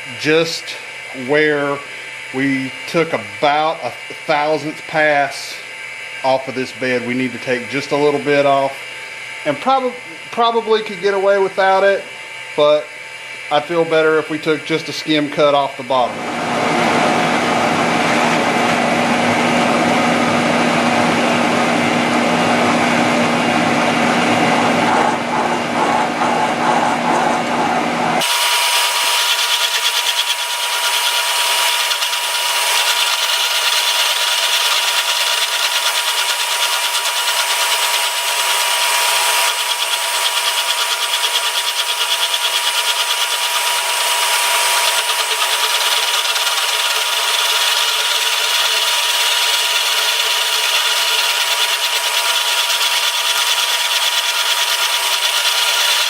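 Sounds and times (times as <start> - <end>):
steady high whine: 0.0 - 30.6
milling machine cutting steel: 28.2 - 56.0.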